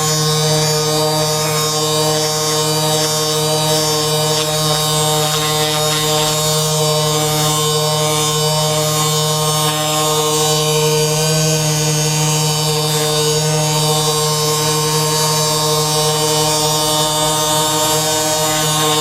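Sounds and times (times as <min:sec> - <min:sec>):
small electric motor buzzing: 0:00.0 - 0:19.0.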